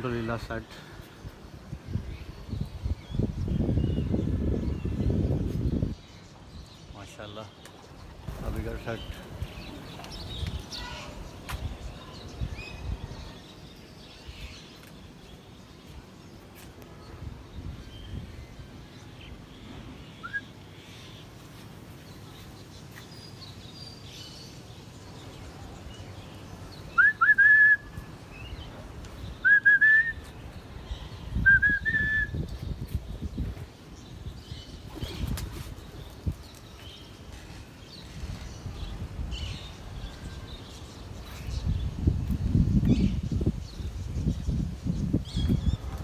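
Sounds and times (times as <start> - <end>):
faint high bird chirps: 20.2 - 21.2
sharp rising whistles: 27.0 - 27.9, 29.4 - 30.3, 31.5 - 32.4.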